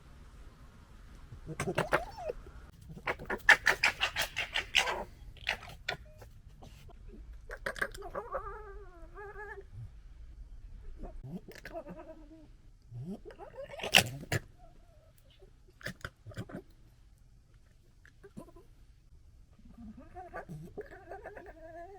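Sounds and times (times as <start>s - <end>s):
foxes chattering: 1.4s - 9.7s, 11.0s - 12.4s, 13.0s - 16.7s
fox calls: 1.4s - 9.9s, 10.9s - 16.7s.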